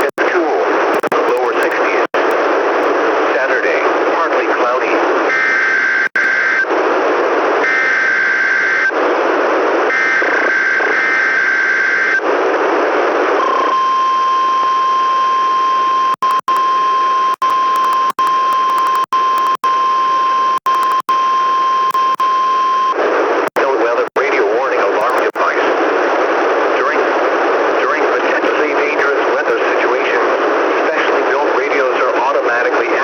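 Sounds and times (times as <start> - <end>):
radio hiss: 0.0 - 7.7, 17.3 - 19.6, 23.0 - 33.0
harsh data bursts: 0.9 - 2.9, 16.2 - 16.7, 17.3 - 19.7, 20.6 - 21.1, 21.9 - 22.3, 23.4 - 25.4.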